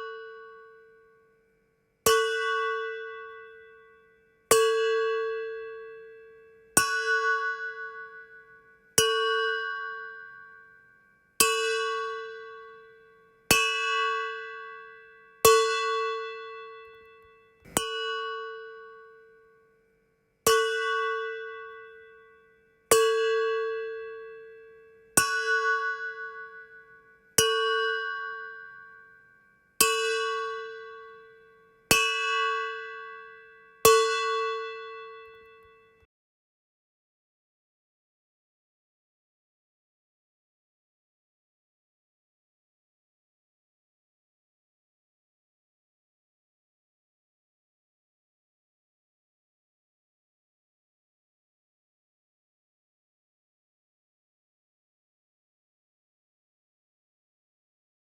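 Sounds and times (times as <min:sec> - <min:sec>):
metallic bell-like ding: 0:17.6 - 0:19.2.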